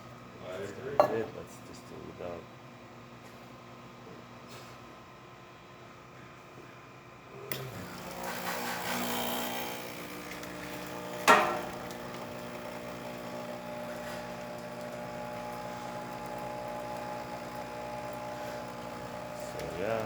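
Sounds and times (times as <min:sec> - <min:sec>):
espresso machine pump humming: 0:07.3 - 0:20.0.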